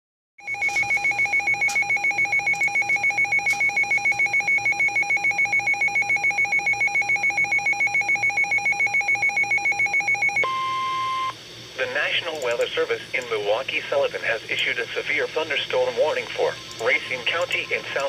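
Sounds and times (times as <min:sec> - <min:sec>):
two-pitch electronic alarm pulsing: 0:00.4 - 0:11.3.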